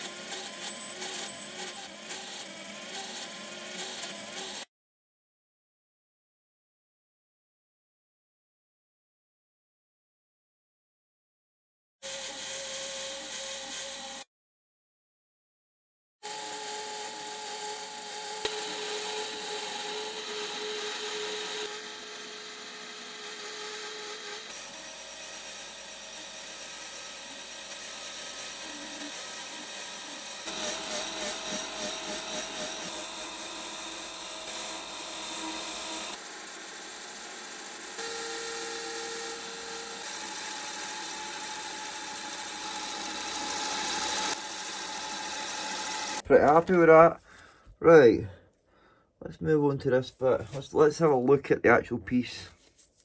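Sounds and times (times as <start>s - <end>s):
metal lathe running: 0.0s - 4.6s, 16.3s - 46.6s.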